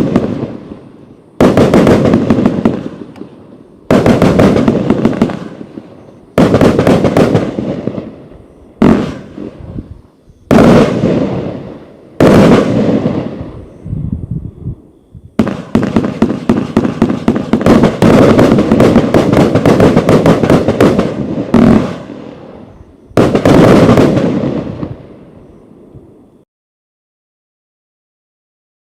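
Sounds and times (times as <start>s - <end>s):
firework bangs: 0.0s - 13.8s, 14.7s - 26.2s
rapid firework barrage: 0.0s - 13.8s, 15.3s - 25.4s.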